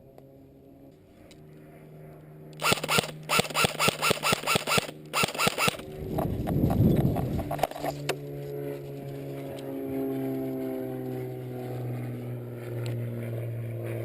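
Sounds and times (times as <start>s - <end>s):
airsoft gun firing rapidly: 2.6s - 5.8s
low rumble: 5.8s - 8.0s.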